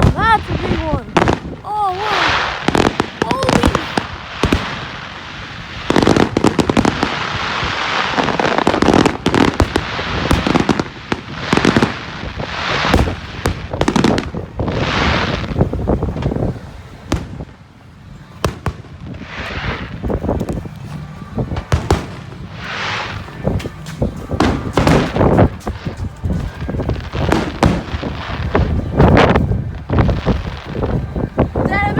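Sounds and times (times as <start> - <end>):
fireworks hissing bursts: 0.0 - 17.5
fireworks bangs and crackling: 0.0 - 31.9.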